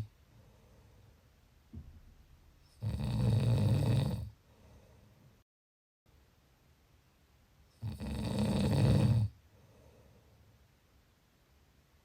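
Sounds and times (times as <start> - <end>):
loud snore: 2.8 - 4.3, 7.8 - 9.4.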